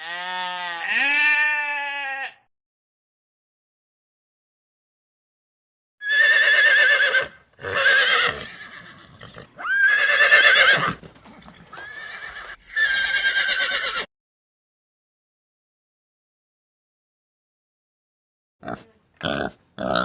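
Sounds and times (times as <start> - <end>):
horse whinnying: 6.0 - 14.1.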